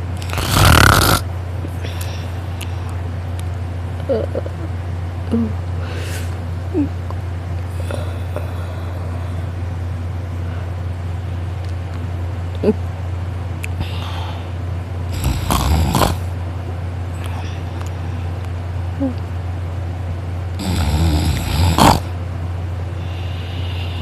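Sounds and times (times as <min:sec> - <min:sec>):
steady low hum: 0:00.0 - 0:24.0
man snoring: 0:00.2 - 0:01.2, 0:15.1 - 0:16.3, 0:20.6 - 0:22.1
faint breathing: 0:01.7 - 0:03.0, 0:05.8 - 0:06.4, 0:07.7 - 0:09.6, 0:13.8 - 0:14.6, 0:22.9 - 0:24.0.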